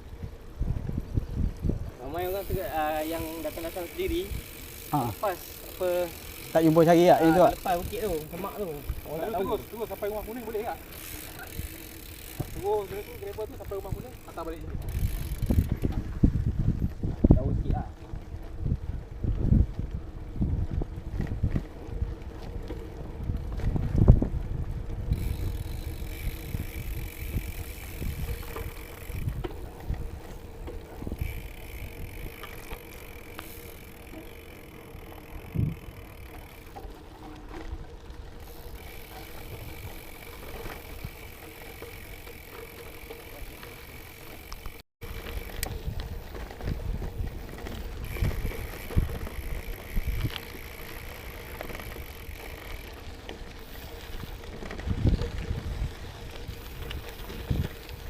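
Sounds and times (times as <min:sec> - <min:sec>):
wind on microphone: 0:00.0 - 0:03.4, 0:13.7 - 0:32.9, 0:34.5 - 0:36.2, 0:45.0 - 0:51.0, 0:53.1 - 0:58.0
bike tyres crunching on gravel: 0:00.0 - 0:58.0
bike frame jolting over bumps: 0:00.1 - 0:58.0.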